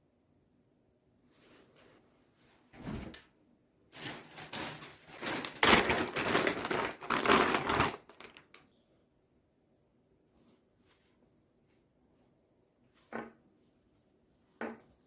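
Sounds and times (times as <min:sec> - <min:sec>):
crinkling rustling handling noise: 0:03.9 - 0:08.7.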